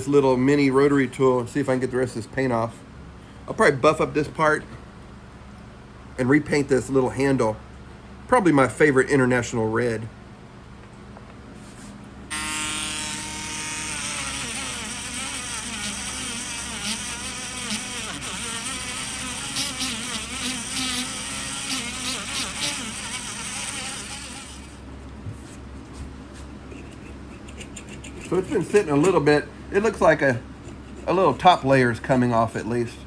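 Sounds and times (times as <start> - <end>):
rotary tool grinding metal: 12.3 - 24.8, 26.7 - 29.2, 30.1 - 31.4.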